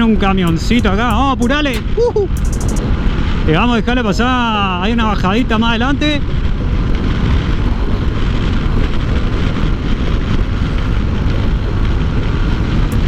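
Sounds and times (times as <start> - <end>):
wind rush over microphone: 0.0 - 13.0
motorcycle road noise: 6.2 - 13.0.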